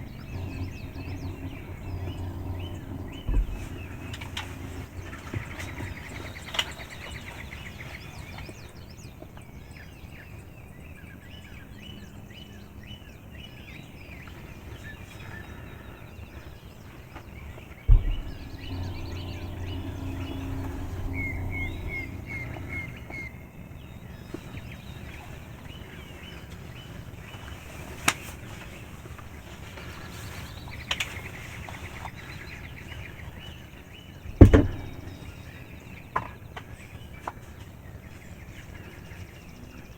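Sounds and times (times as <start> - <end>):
sharp thumps: 0.0 - 6.7, 17.9 - 23.4, 34.3 - 35.5
songbirds chirping: 0.0 - 39.9.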